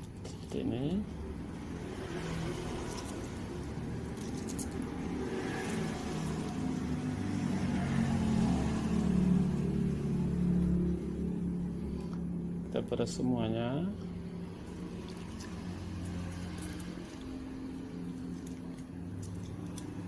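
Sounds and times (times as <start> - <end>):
vehicle engine humming: 0.0 - 20.0.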